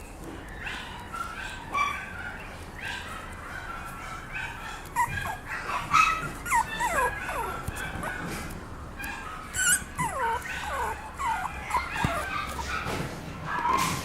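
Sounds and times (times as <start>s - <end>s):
puppy whimpering and yipping: 4.3s - 13.0s.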